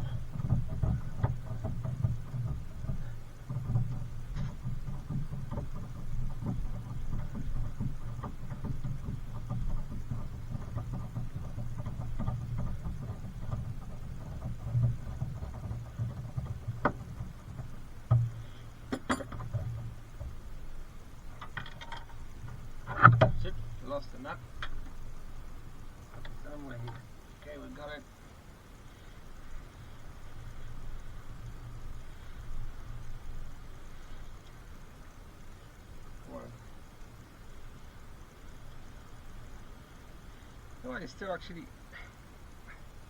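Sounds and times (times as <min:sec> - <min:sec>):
steady low rumble: 0:00.0 - 0:04.6, 0:05.5 - 0:43.0
tools clattering: 0:18.9 - 0:19.8.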